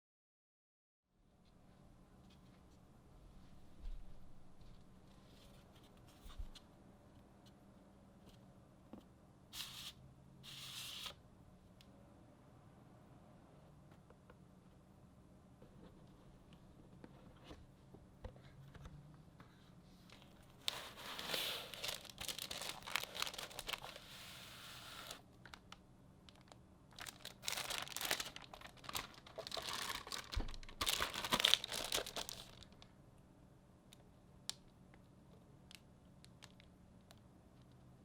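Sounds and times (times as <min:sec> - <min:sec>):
packaging crinkling and rustling: 0:20.2 - 0:32.8.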